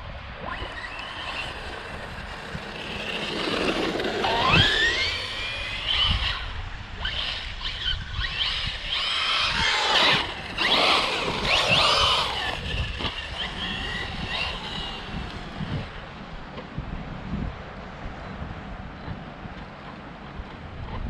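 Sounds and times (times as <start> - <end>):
rc car motor whining: 0.4 - 16.2
tyres on gravel: 0.5 - 6.1, 8.4 - 16.1.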